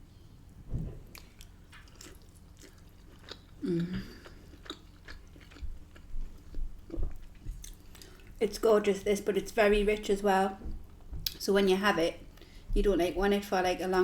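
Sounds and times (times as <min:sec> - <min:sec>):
wet chewing and lip smacks: 0:01.1 - 0:08.4
person humming: 0:03.6 - 0:04.2.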